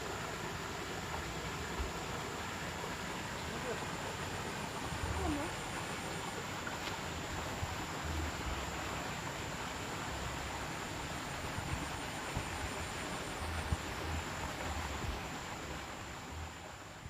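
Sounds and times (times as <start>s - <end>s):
insect trill: 0.0s - 17.0s
steady hiss: 0.0s - 17.0s
wind rumble on microphone: 10.2s - 16.6s.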